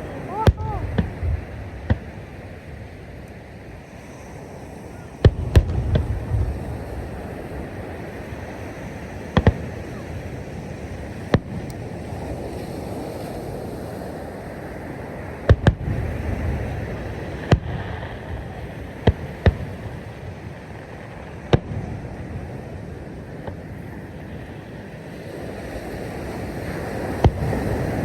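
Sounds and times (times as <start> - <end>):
fireworks bangs: 0.0 - 3.3, 5.0 - 12.3, 15.2 - 25.1, 26.8 - 28.0.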